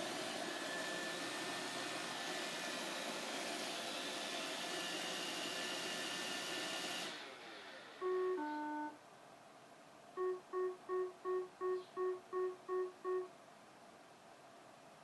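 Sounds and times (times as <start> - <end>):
short electronic beeps: 8.0 - 9.0, 10.2 - 13.3.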